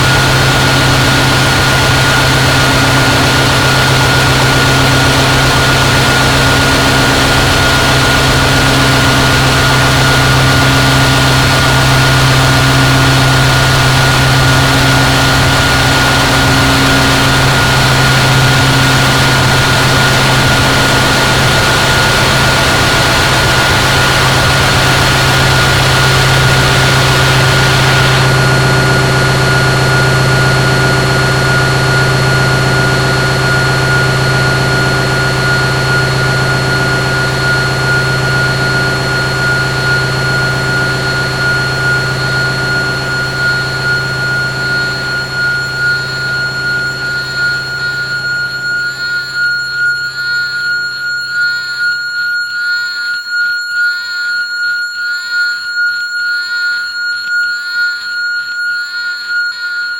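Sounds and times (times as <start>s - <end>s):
harsh distorted noise drone: 0.0s - 52.0s
steady low hum: 0.0s - 52.6s
high whistling tones: 8.9s - 59.9s.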